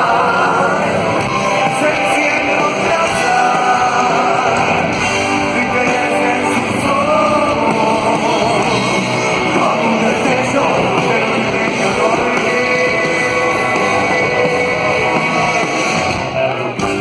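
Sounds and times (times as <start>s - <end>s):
electric guitars: 0.0s - 17.0s
live rock band: 0.0s - 17.0s.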